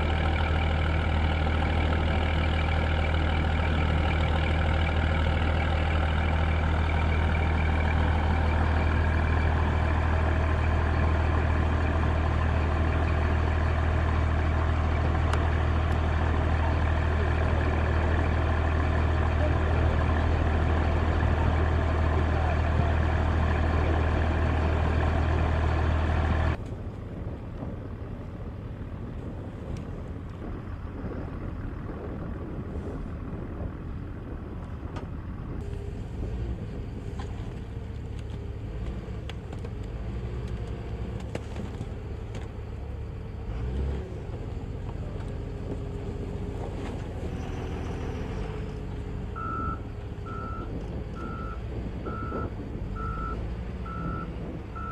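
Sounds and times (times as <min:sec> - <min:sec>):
heavy engine drone: 0:00.0 - 0:54.9
rumbling engines and vehicles: 0:00.0 - 0:54.9
reversing alarm beeping: 0:49.4 - 0:54.9.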